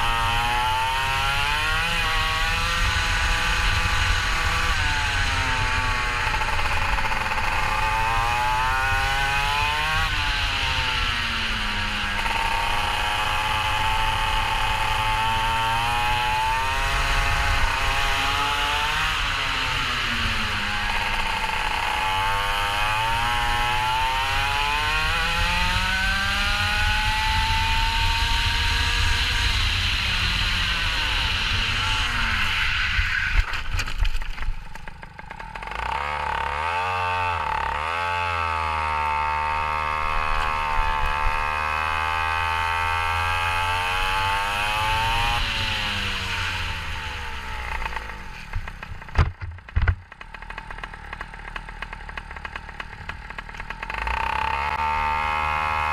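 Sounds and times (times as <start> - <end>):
go-kart engine revving: 0.0 - 55.9
sharp knocks: 49.1 - 50.0.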